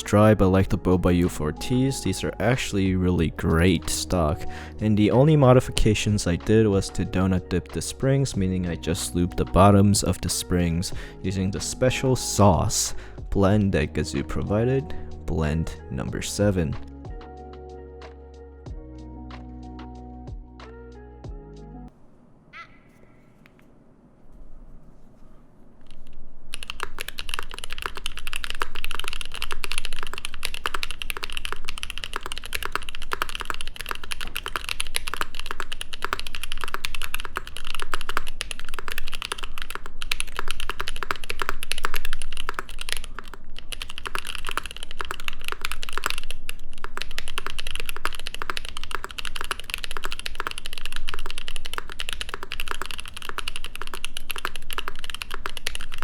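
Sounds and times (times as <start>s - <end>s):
fast mechanical keyboard typing: 25.9s - 56.0s.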